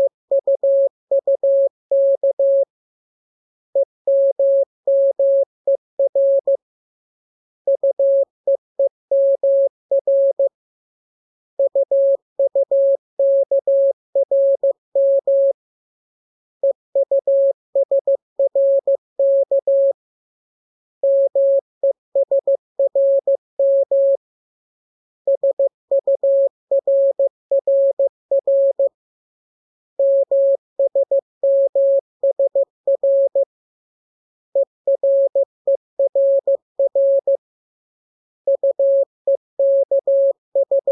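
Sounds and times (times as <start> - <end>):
morse code tone: 39.6 - 40.9.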